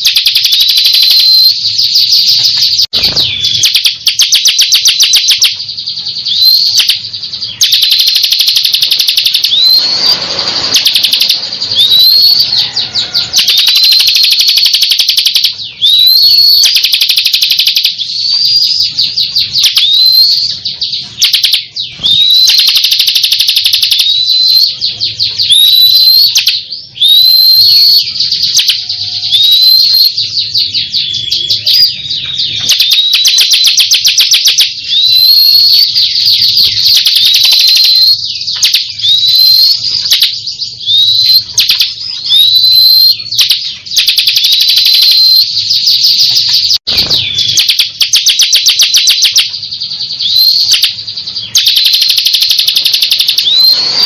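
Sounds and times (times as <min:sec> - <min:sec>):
bird singing chirps and trills: 0:00.0 - 0:54.0.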